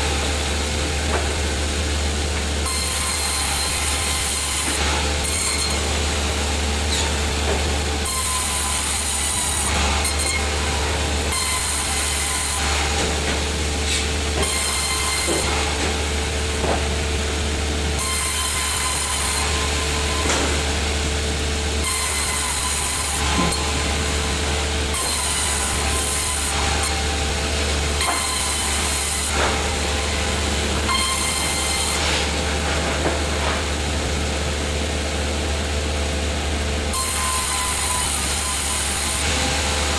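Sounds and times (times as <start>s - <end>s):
sawmill machinery humming: 0.0s - 39.9s
saw cutting timber hiss: 2.6s - 7.2s, 8.0s - 16.2s, 21.8s - 32.4s, 36.9s - 39.9s.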